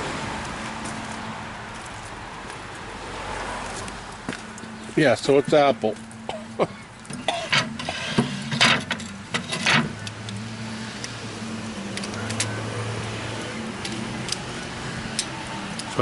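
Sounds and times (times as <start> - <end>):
low engine-like hum: 4.0 - 16.0
sharp knocks and clatters: 7.1 - 10.1.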